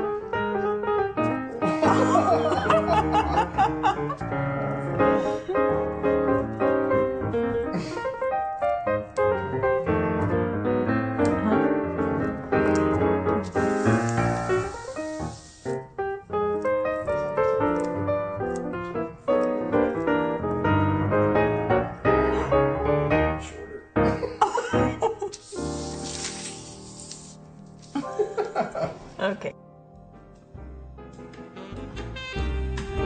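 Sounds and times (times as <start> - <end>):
piano music with busy notes: 0.0 - 26.3, 26.9 - 33.0
burst of hiss: 13.5 - 15.8, 25.4 - 27.4.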